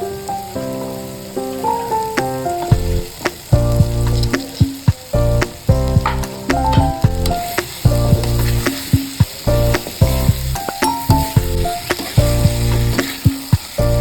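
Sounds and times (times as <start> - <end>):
background music: 0.0 - 14.0
food sizzling in a frying pan: 0.0 - 14.0
stirring in a pan: 7.2 - 14.0.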